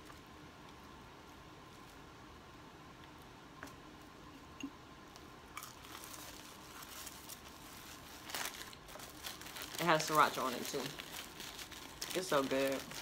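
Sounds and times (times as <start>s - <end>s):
paper wrapper rustling: 5.6s - 13.0s.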